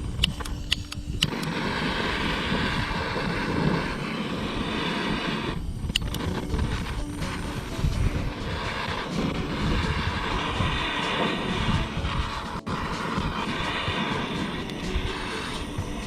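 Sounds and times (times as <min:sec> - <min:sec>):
sharp clicks: 0:00.0 - 0:02.2, 0:05.5 - 0:08.1
wind buffeting microphone: 0:00.0 - 0:16.0.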